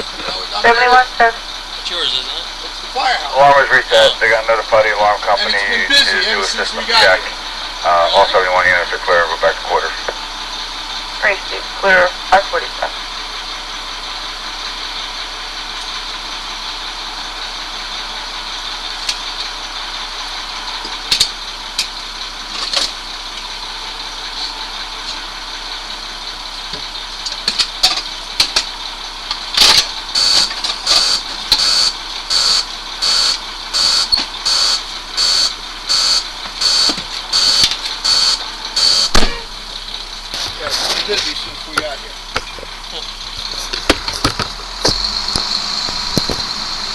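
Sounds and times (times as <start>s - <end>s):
vehicle engine running: 0.0s - 46.9s
high-pitched electronic beep: 30.2s - 39.2s.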